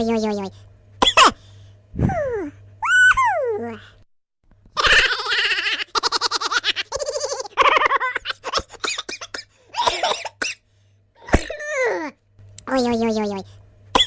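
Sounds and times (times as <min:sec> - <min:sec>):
person laughing and giggling: 0:04.8 - 0:09.4.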